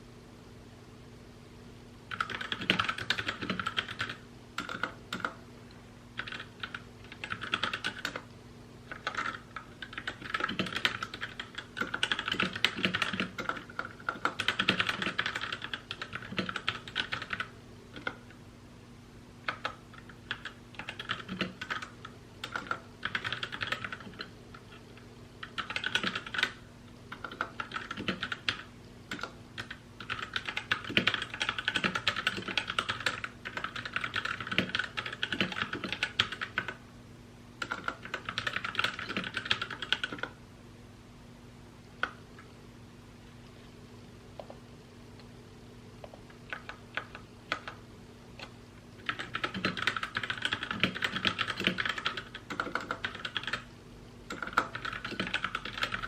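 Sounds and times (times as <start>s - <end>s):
faint low hum: 0.0s - 56.0s
mechanical keyboard typing: 2.1s - 5.4s, 6.2s - 8.3s, 8.9s - 18.4s, 19.5s - 24.8s, 25.4s - 36.8s, 37.6s - 40.4s, 46.5s - 47.8s, 48.4s - 53.7s, 54.3s - 56.0s.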